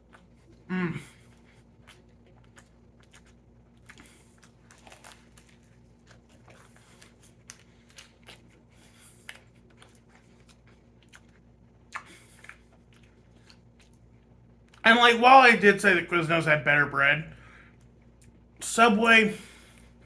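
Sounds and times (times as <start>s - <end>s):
chewing sandwich: 0.0s - 14.9s, 19.5s - 20.0s.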